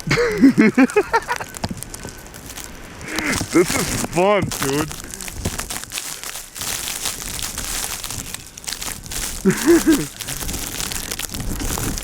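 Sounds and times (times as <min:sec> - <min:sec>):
footsteps crunching through snow: 0:02.1 - 0:12.0.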